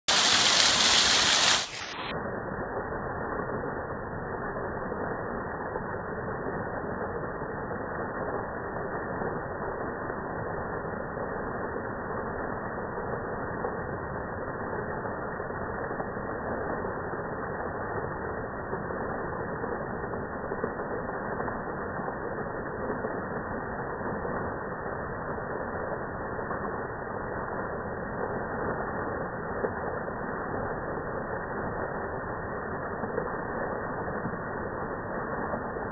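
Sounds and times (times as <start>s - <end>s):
waterfall rushing: 0.0s - 2.1s.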